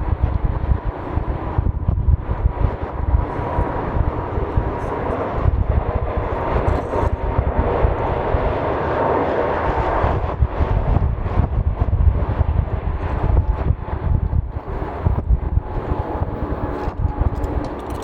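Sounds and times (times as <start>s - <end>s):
jet engines rushing past: 0.0s - 18.0s
wind buffeting microphone: 0.0s - 18.0s.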